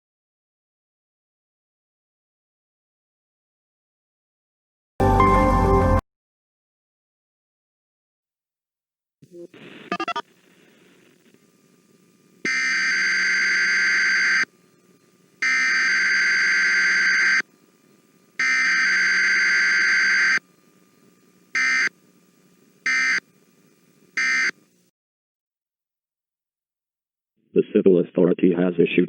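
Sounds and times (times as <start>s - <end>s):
faint steady hiss: 9.2s - 24.9s
harsh buzzing alert tones: 9.3s - 10.3s, 12.4s - 14.5s, 15.4s - 17.5s, 18.3s - 20.5s, 21.5s - 22.0s, 22.8s - 23.3s, 24.2s - 24.6s.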